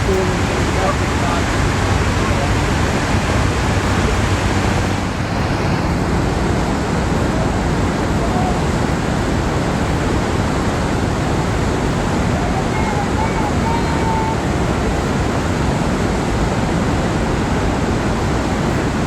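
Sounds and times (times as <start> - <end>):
loud waterfall rushing: 0.0 - 19.0.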